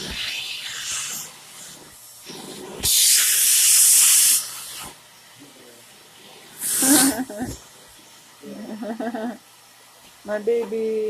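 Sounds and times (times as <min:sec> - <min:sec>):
loud hiss of air spray: 0:00.0 - 0:05.1, 0:06.5 - 0:07.6.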